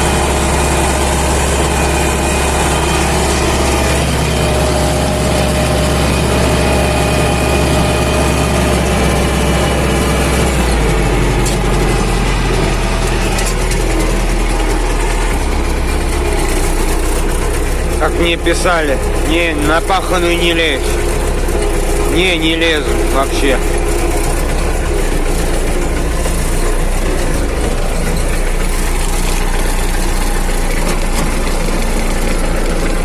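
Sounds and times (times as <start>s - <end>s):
tractor diesel engine running: 0.0s - 33.0s.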